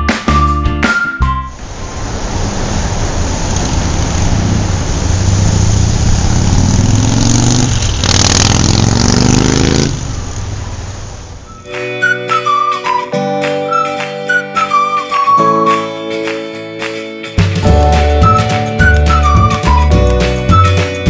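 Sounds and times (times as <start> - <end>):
car engine revving: 1.7 - 11.4.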